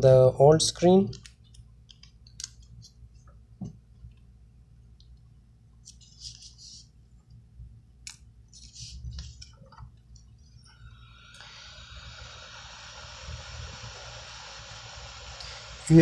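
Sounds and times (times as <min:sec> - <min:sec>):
hot-air blower hissing: 0:10.6 - 0:16.0.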